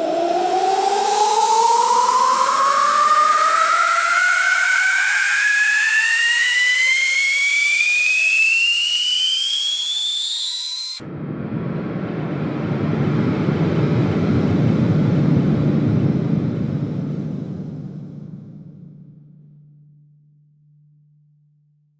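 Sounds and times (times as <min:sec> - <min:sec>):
jet engine whine: 0:00.0 - 0:19.4
deep jet engine rumble: 0:10.8 - 0:19.4.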